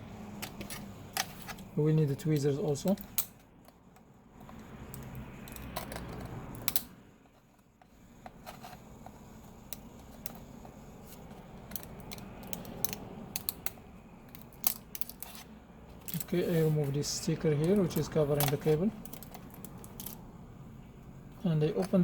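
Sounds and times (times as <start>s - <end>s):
tweezers clicking and tapping: 11.7s - 15.2s
soft rustling or scraping: 16.1s - 19.5s.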